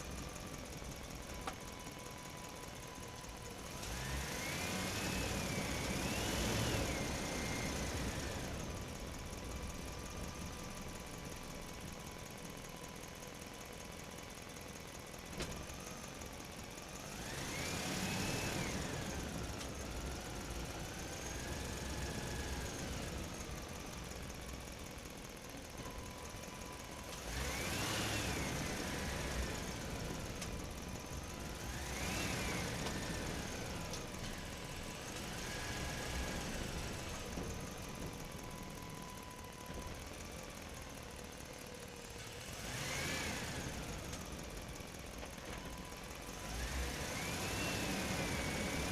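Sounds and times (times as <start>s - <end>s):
engine revving with whine: 3.1s - 11.8s, 16.9s - 24.4s, 25.8s - 40.3s, 42.1s - 48.9s.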